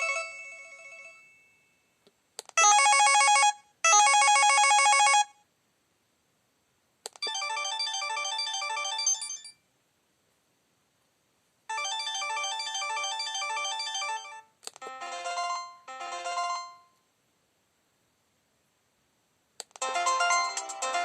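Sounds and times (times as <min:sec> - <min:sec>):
electronic ringtone melody: 0:07.2 - 0:09.6, 0:11.7 - 0:16.9, 0:19.8 - 0:21.0
ringtone short phrases: 0:07.3 - 0:09.5.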